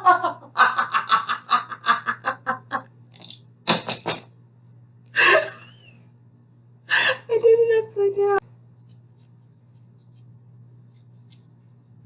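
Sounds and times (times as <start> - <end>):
person laughing: 0.0 - 2.9.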